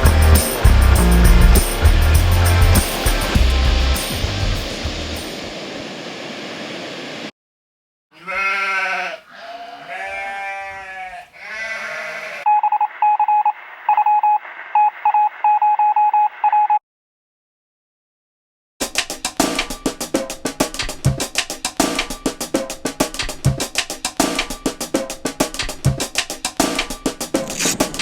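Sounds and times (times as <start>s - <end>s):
music: 0.0s - 5.5s, 18.8s - 28.0s
bleating calls: 8.2s - 12.5s
short electronic beeps: 12.5s - 16.8s.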